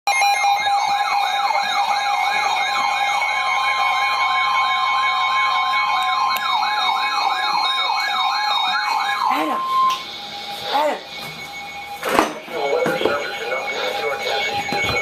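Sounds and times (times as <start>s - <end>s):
electronic siren yelping: 0.1s - 15.0s
two-tone alert signal: 5.0s - 15.0s.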